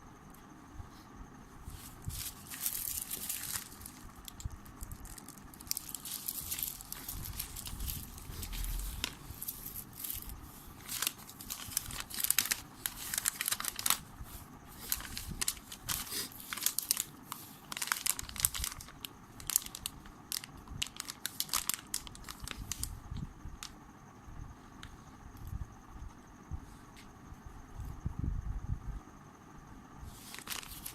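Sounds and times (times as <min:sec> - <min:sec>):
packaging crinkling and crackling: 0:01.7 - 0:23.8, 0:30.2 - 0:30.9.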